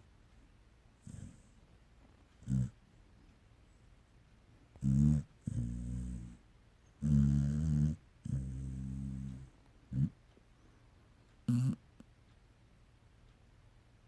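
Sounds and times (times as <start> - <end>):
dog snoring: 1.0 - 1.6, 2.4 - 2.8, 4.8 - 6.4, 7.0 - 10.2, 11.5 - 11.8
dog snorting: 1.0 - 1.6, 2.4 - 2.8, 4.8 - 6.4, 7.0 - 10.2, 11.5 - 11.8.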